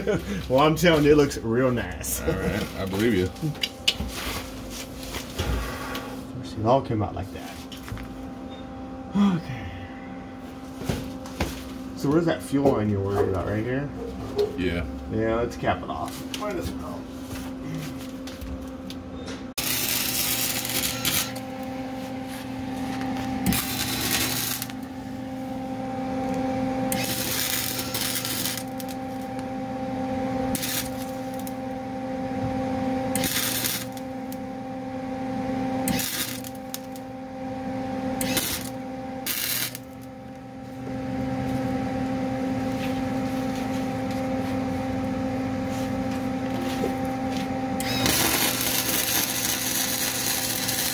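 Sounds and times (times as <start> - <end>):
electrical hum: 0.0 - 50.9
welding arc crackling: 19.6 - 25.4, 26.3 - 29.5, 30.4 - 31.7, 33.1 - 34.4, 35.8 - 37.1, 38.2 - 40.1, 47.8 - 50.9.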